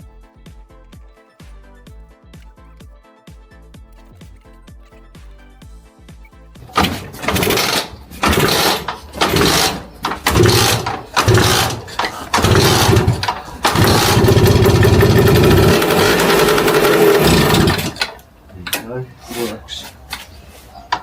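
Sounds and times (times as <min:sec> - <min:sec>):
scooter engine starting and running: 0:03.9 - 0:19.4, 0:20.0 - 0:21.0.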